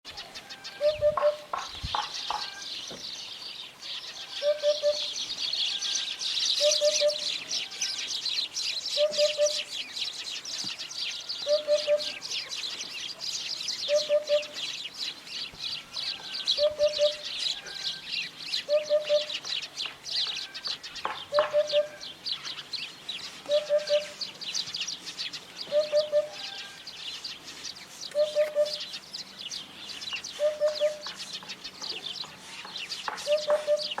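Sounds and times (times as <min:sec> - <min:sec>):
hoopoe hooting: 0:00.6 - 0:01.6, 0:04.2 - 0:08.2, 0:08.9 - 0:09.8, 0:11.1 - 0:14.8, 0:15.8 - 0:19.4, 0:21.3 - 0:22.2, 0:23.4 - 0:24.3, 0:25.6 - 0:26.8, 0:28.1 - 0:28.9, 0:30.3 - 0:31.2, 0:33.2 - 0:34.0
high-pitched chirping: 0:04.4 - 0:05.2, 0:06.6 - 0:07.5, 0:08.9 - 0:09.7, 0:11.4 - 0:12.3, 0:13.8 - 0:14.7, 0:16.5 - 0:18.0, 0:23.5 - 0:24.3, 0:25.6 - 0:26.6, 0:30.3 - 0:31.2.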